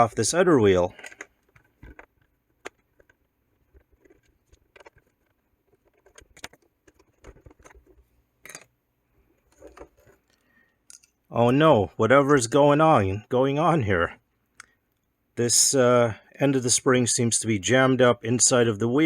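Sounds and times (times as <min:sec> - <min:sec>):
small plastic parts clicking: 0:00.9 - 0:08.7, 0:09.5 - 0:11.2.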